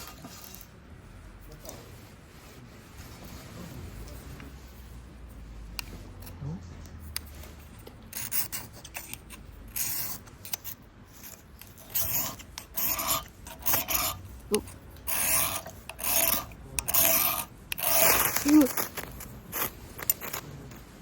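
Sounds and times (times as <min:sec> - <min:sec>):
rasping scraping strokes: 0:07.1 - 0:21.0.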